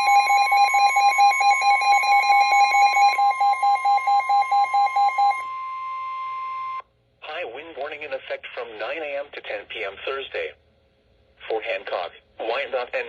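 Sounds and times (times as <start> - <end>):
steady alarm tone: 0.0 - 6.8.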